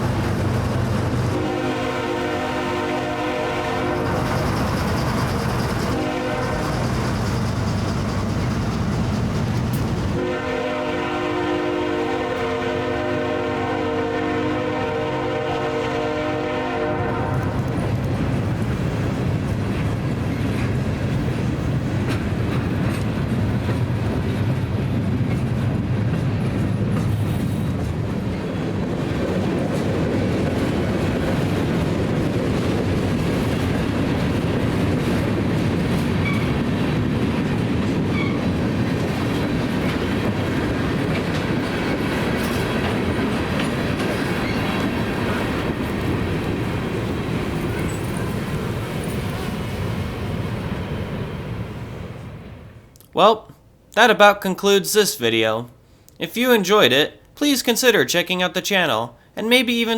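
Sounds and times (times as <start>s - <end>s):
wheels clacking over rail joints: 0.0s - 1.6s, 2.9s - 10.2s, 17.4s - 51.6s
freight train rumbling past: 0.0s - 52.9s
locomotive horn: 1.1s - 4.5s, 5.8s - 7.0s, 10.2s - 17.8s.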